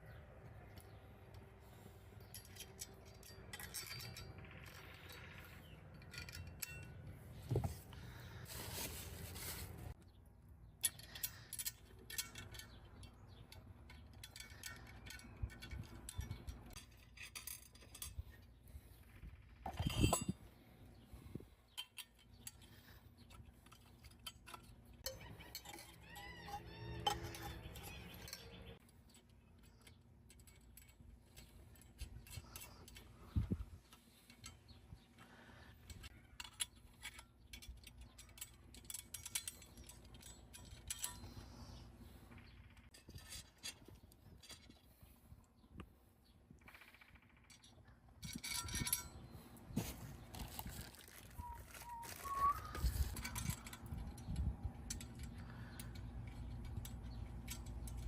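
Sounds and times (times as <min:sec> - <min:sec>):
metal parts clinking and knocking: 0:00.6 - 0:09.0, 0:10.6 - 0:45.2, 0:47.2 - 0:58.0.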